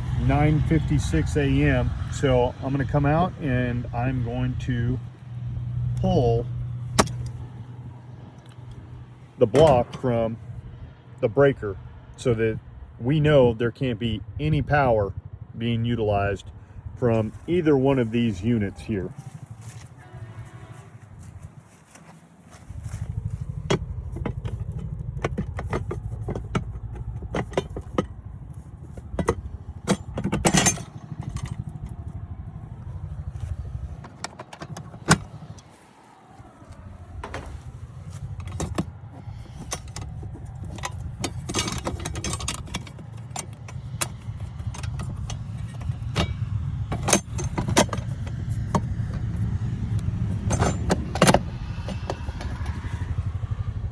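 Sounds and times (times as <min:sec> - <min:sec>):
metal clicks and clanks: 0:05.9 - 0:07.6, 0:08.2 - 0:10.2, 0:23.0 - 0:32.2, 0:32.8 - 0:35.7, 0:36.7 - 0:53.3
steady low rumble: 0:14.2 - 0:53.9.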